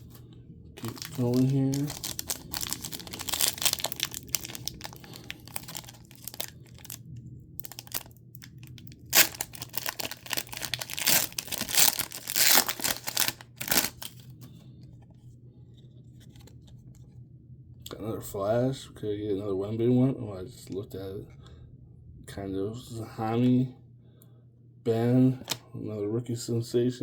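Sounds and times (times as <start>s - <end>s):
cards rustling: 0.8s - 7.0s, 7.6s - 8.1s, 8.8s - 14.4s
foil wrapper tearing and crinkling: 0.8s - 7.0s, 7.6s - 14.2s.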